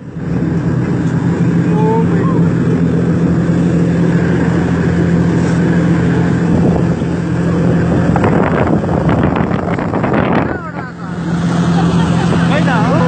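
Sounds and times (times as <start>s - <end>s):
boat engine droning: 0.0s - 13.0s
wind and water rushing: 0.0s - 13.0s
voices: 1.0s - 2.9s, 10.1s - 13.0s.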